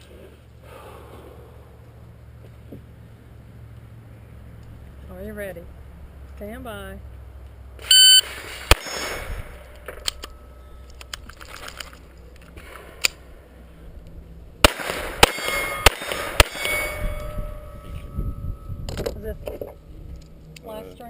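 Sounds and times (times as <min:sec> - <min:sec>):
pistol shots: 0:08.3 - 0:09.9, 0:14.6 - 0:17.0
steel plates ringing: 0:08.7 - 0:10.9, 0:15.1 - 0:19.9.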